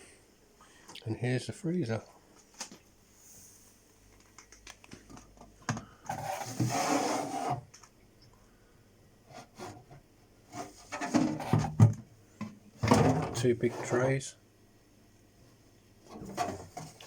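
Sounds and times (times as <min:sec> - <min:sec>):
plastic tray sliding scrape: 0:06.1 - 0:07.6, 0:10.5 - 0:11.8, 0:12.9 - 0:14.1, 0:16.1 - 0:17.0.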